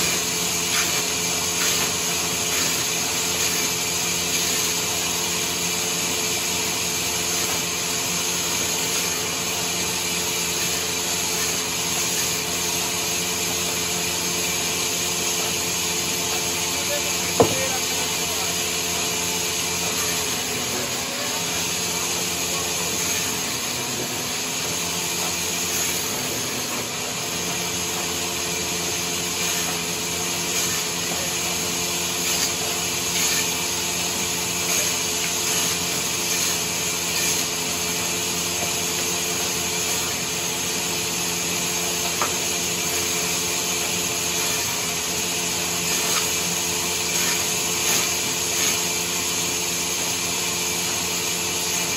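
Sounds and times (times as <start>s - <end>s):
sawmill saw cutting timber: 0.0s - 51.9s
steady machine hum: 0.0s - 51.9s.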